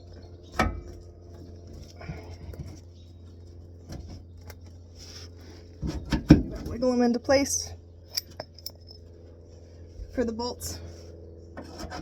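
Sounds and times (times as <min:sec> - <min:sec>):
steady low hum: 0:00.0 - 0:12.0
shock absorber knocks and clinks: 0:08.1 - 0:09.1.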